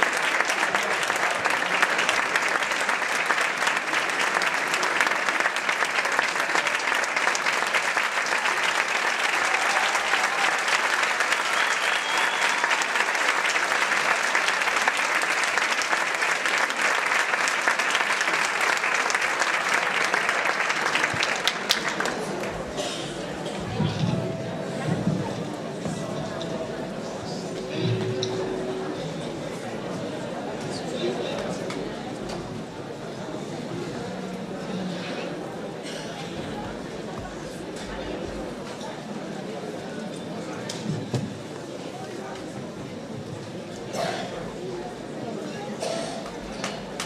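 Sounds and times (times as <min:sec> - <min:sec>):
audience clapping: 0:00.0 - 0:23.8.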